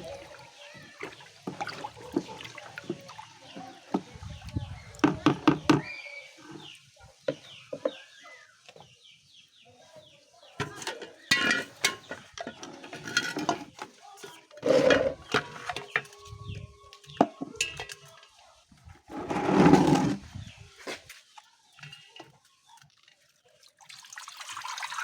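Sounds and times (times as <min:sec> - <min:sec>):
knocks and handling noises: 0:10.6 - 0:16.2.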